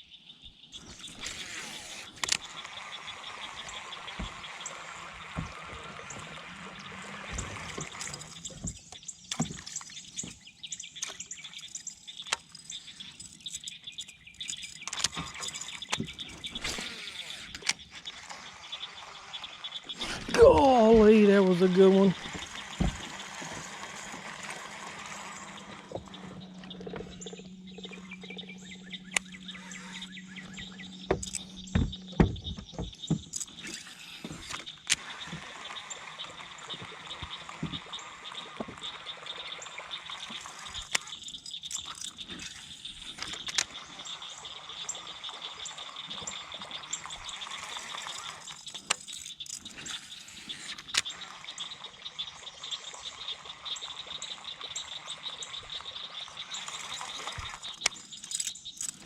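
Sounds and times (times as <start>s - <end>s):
birds calling: 0.0s - 59.0s
insects chirring: 0.0s - 59.0s
sharp clicks and knocks: 7.3s - 18.1s, 22.1s - 35.6s
low steady hum: 20.0s - 34.6s.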